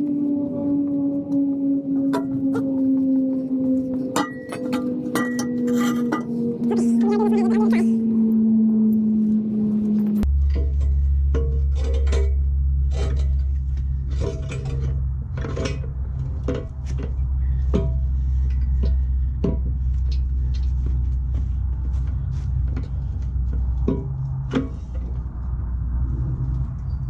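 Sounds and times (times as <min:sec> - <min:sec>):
low hum: 0:00.0 - 0:27.0
steel parts clanking: 0:04.1 - 0:06.4, 0:10.4 - 0:20.8.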